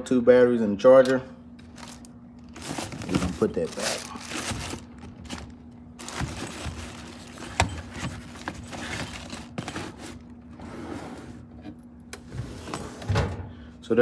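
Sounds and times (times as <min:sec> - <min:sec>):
tool bag scraping and rustling: 0:01.6 - 0:11.4.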